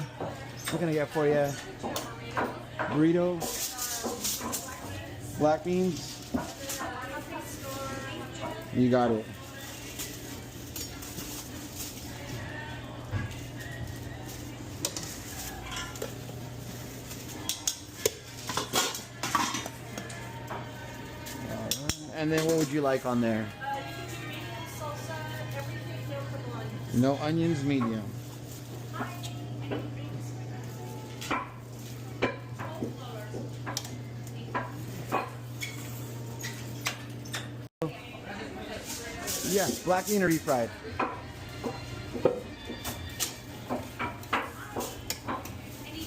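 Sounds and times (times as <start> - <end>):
metal utensils clinking on pans: 0.0 - 12.2, 13.2 - 23.2
utensils and pans clattering: 0.0 - 37.7, 38.5 - 46.0.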